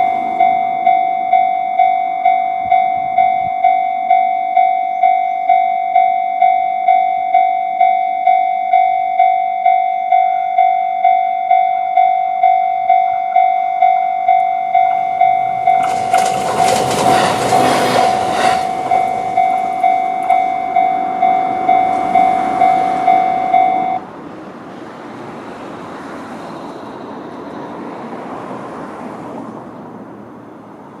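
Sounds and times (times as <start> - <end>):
level crossing bell ringing: 0.0 - 24.0
electric train passing: 0.0 - 31.0
train wheel clatter: 15.2 - 24.0.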